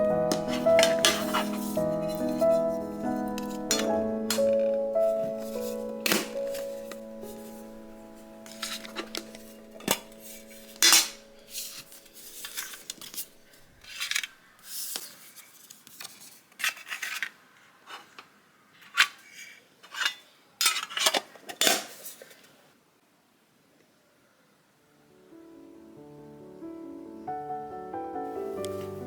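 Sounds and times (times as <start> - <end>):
dishes and cutlery clinking: 0.3 - 7.6, 8.5 - 13.2.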